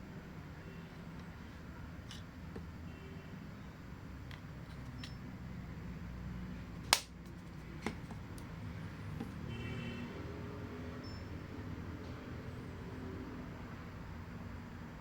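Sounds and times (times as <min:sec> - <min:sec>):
handling noise: 0:06.8 - 0:09.5.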